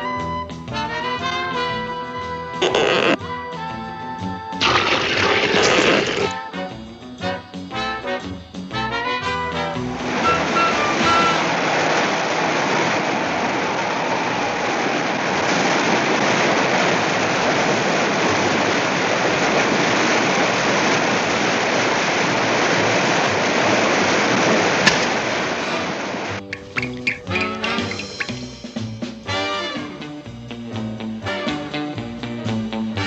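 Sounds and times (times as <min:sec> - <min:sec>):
steady rushing noise: 0:10.0 - 0:26.6.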